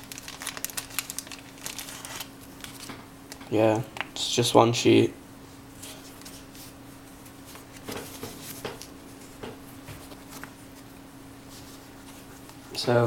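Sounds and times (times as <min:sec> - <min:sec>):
paper rustling and clicking: 0:00.0 - 0:03.5, 0:10.0 - 0:10.6
low electrical hum: 0:00.0 - 0:13.0.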